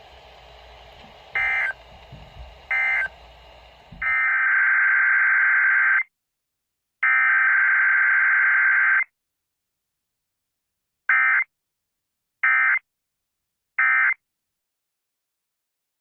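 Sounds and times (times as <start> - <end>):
buzzy electronic data bursts: 0.0 - 4.4.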